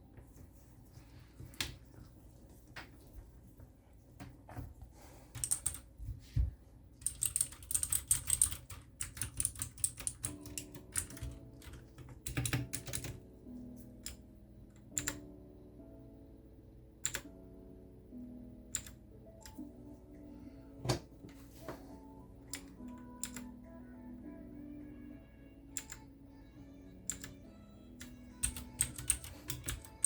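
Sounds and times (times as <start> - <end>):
mechanical keyboard clicking: 5.3 - 5.9, 7.0 - 13.2, 14.8 - 15.2, 17.0 - 17.3, 18.7 - 19.6, 22.5 - 23.5, 25.8 - 26.1, 27.1 - 27.4, 28.0 - 30.0
soft background music: 5.3 - 30.0.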